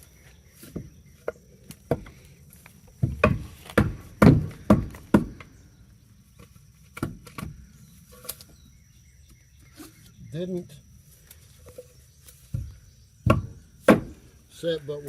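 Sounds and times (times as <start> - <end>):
sharp knocks on wood: 0.7 - 2.2, 3.0 - 5.5, 12.5 - 14.2.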